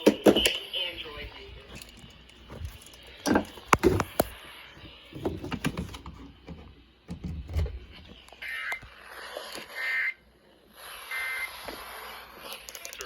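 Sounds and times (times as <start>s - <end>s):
sharp clicks and knocks: 1.8s - 4.4s.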